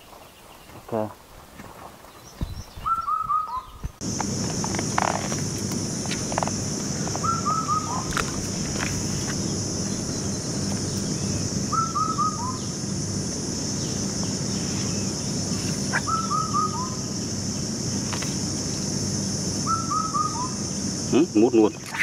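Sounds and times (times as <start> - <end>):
high insect drone: 4.0 - 22.0
bird repeating short call: 7.2 - 8.1, 11.7 - 12.7, 15.9 - 17.0, 19.6 - 20.6.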